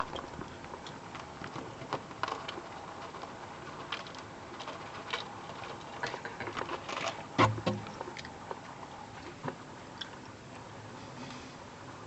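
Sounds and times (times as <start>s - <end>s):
light clicks and scratches: 0.0s - 9.6s
steady hiss: 10.8s - 12.0s.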